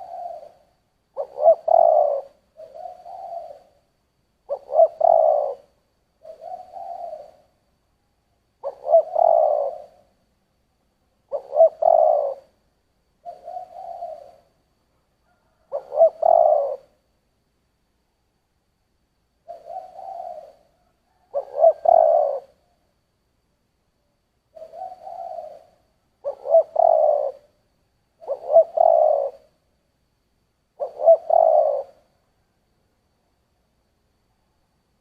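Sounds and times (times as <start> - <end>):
dove cooing: 0.0 - 7.6, 8.6 - 10.1, 11.2 - 12.6, 13.2 - 14.6, 15.2 - 17.0, 19.4 - 22.8, 24.5 - 29.6, 30.8 - 32.1.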